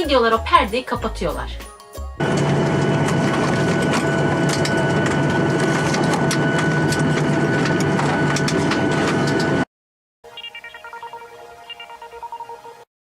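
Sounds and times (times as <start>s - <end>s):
airliner cabin engine roar: 2.2s - 9.6s.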